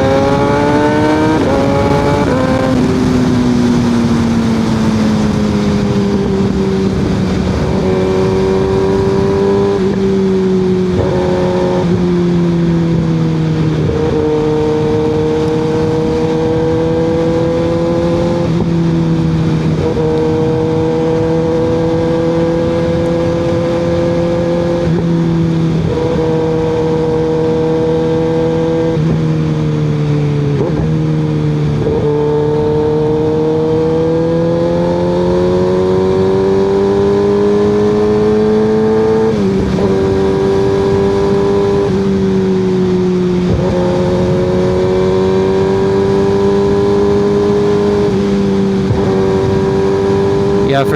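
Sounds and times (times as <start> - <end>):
loud motorcycle engine: 0.0 - 50.9.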